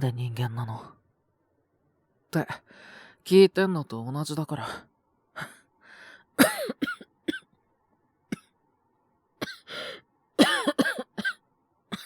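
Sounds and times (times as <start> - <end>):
man drawing breath: 5.4 - 6.3, 9.7 - 10.0
man coughing: 6.4 - 7.4, 9.4 - 9.7, 10.4 - 11.4.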